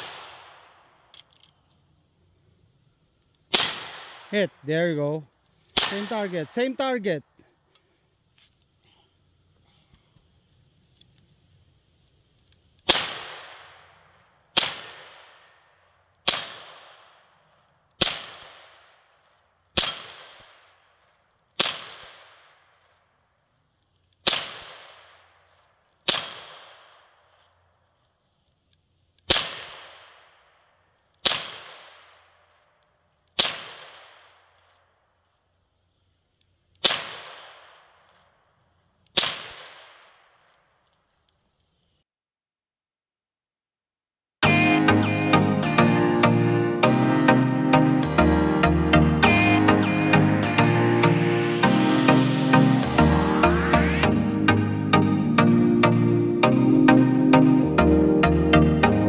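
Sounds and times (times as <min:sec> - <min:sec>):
rifle shots echoing: 0:03.5 - 0:04.3, 0:05.8 - 0:06.6.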